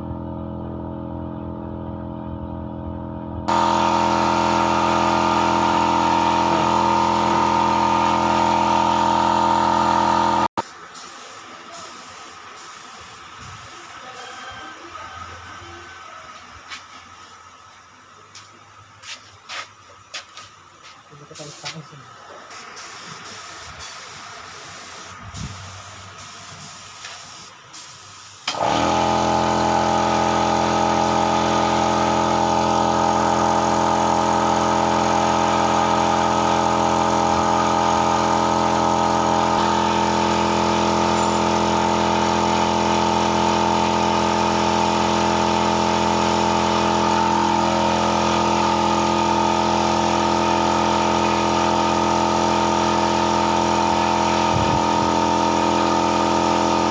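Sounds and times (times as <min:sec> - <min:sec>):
motor-driven machine humming: 0:03.5 - 0:10.6.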